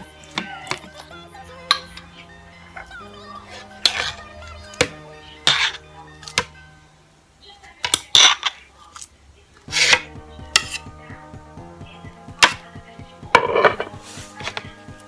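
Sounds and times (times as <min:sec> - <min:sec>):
quiet background music: 0:00.0 - 0:15.0
kitchen items clinking: 0:03.5 - 0:06.6, 0:07.8 - 0:09.1, 0:13.4 - 0:14.8.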